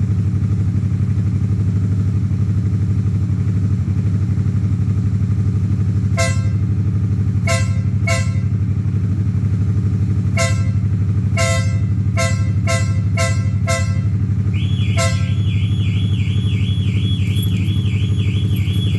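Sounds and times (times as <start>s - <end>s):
motorcycle idling: 0.0s - 18.9s
horn short beeps: 11.4s - 18.9s
warbling alarm tone: 14.5s - 18.9s.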